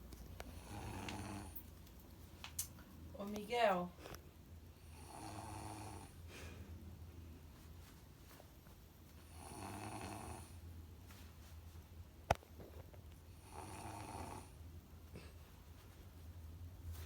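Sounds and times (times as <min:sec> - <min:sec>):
baby snoring: 0:00.5 - 0:01.6, 0:09.3 - 0:10.6, 0:13.4 - 0:14.5.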